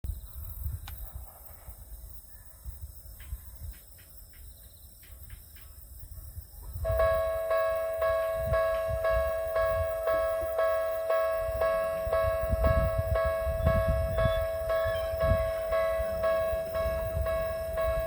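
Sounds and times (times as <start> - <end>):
wind noise on microphone: 0.0 - 18.0
level crossing warning bell: 6.8 - 18.0.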